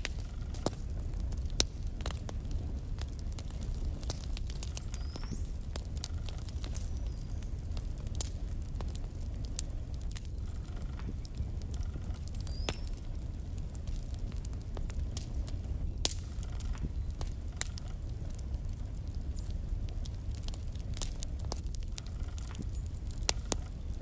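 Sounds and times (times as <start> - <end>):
low rumble of flames: 0.0 - 24.0
wood fire crackling and popping: 0.0 - 24.0.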